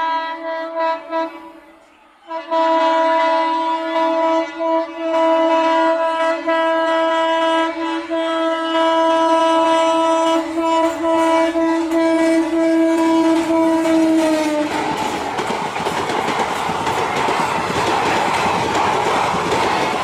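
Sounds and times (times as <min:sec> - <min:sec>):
train horn blast: 0:00.0 - 0:15.2
train rumble: 0:02.5 - 0:20.0.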